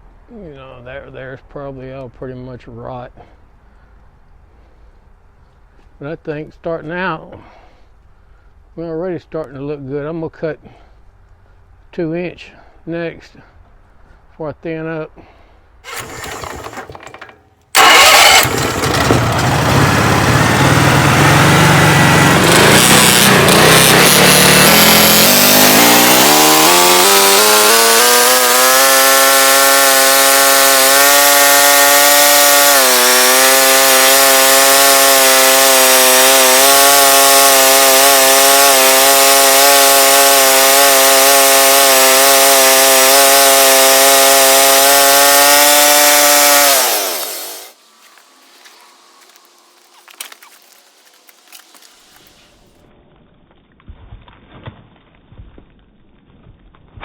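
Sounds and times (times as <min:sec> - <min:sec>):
gasoline engine starting and running: 0:15.9 - 0:29.9, 0:42.2 - 0:52.6.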